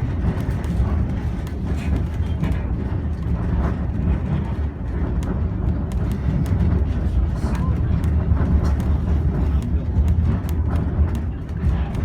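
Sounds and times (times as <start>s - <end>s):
train rumbling on rails: 0.0s - 12.0s.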